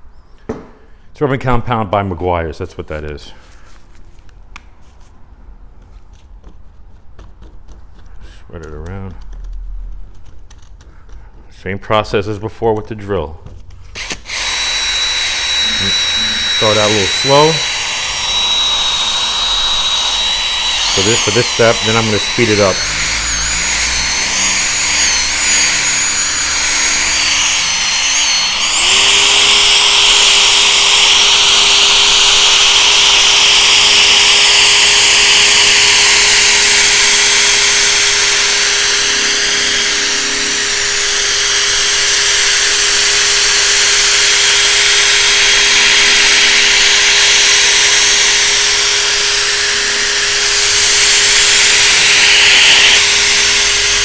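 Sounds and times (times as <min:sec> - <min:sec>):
electric drill whining: 0:13.9 - 0:54.0.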